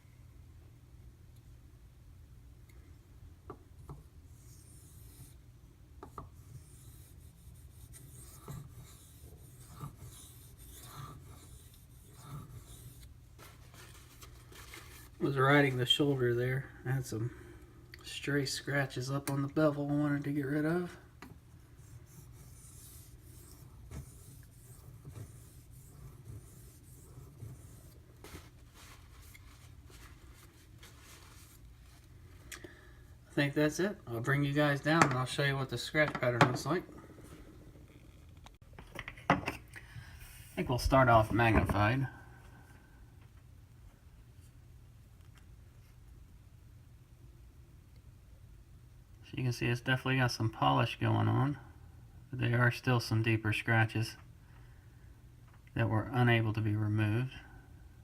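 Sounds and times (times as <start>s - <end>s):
knife rasping on whetstone: 6.5s - 13.1s.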